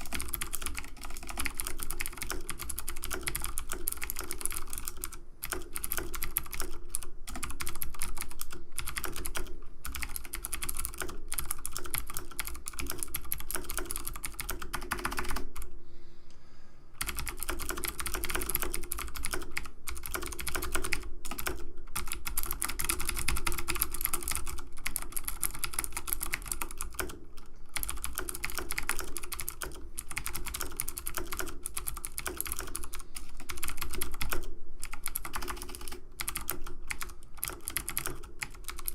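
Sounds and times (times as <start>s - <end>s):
rapid clicking like typing: 0.0s - 15.7s, 17.0s - 38.9s.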